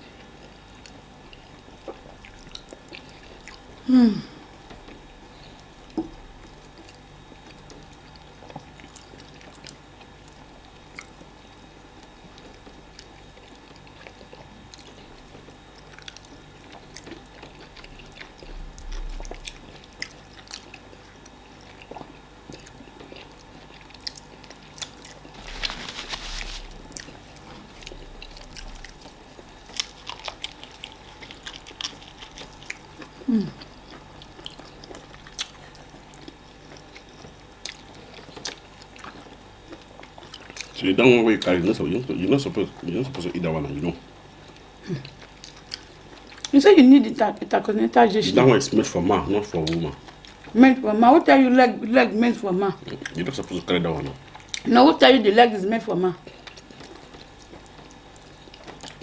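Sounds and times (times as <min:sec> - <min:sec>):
wet chewing and biting: 0:15.8 - 0:40.8
rustling and slurping: 0:24.9 - 0:32.9.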